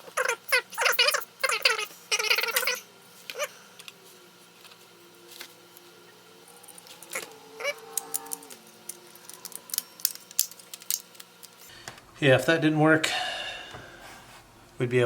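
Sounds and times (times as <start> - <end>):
plastic parts clicking: 8.0 - 12.0.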